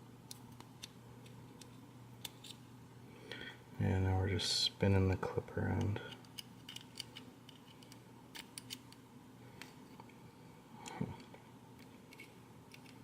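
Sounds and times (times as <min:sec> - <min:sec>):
small metallic clicks and scrapes: 0:06.0 - 0:09.0, 0:11.8 - 0:13.0.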